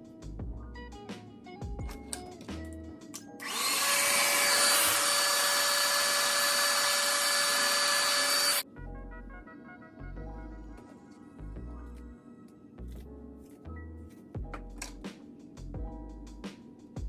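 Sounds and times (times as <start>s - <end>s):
soft music: 0.0s - 4.5s, 6.8s - 17.0s
small electric motor whirring: 3.4s - 8.6s.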